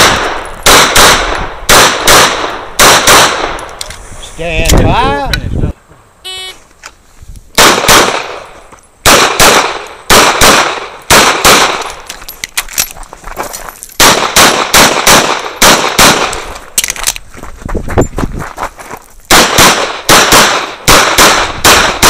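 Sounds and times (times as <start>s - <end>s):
pistol shots in quick pairs: 0.0s - 3.6s, 7.6s - 8.4s, 9.0s - 12.0s, 14.0s - 16.5s, 19.3s - 22.0s.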